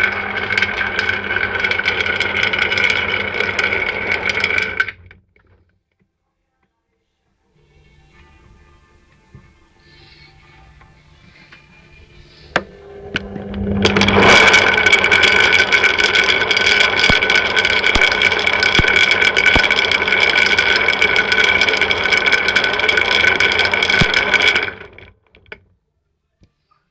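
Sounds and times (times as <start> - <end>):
high motor whine: 10.8 - 25.0
shells clattering in drum: 12.8 - 24.7.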